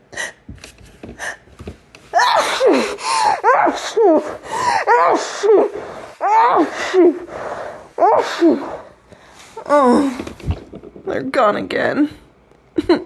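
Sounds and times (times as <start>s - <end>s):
woman sneezing: 8.0s - 8.8s.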